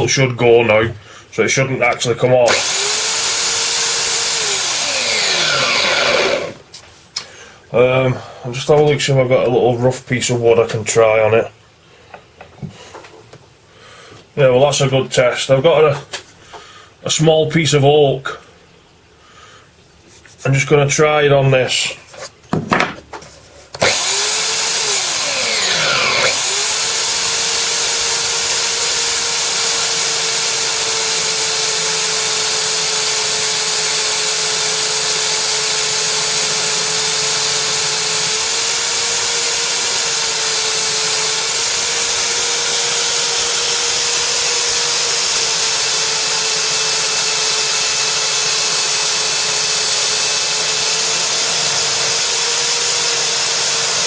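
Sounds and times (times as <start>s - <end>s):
belt sander sanding wood: 2.5s - 6.6s, 23.8s - 54.0s.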